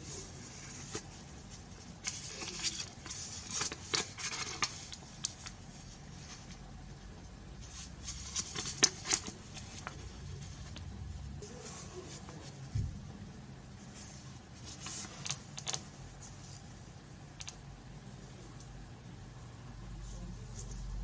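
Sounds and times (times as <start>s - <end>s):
packaging rustling and scraping: 0.0s - 6.6s, 7.6s - 10.8s.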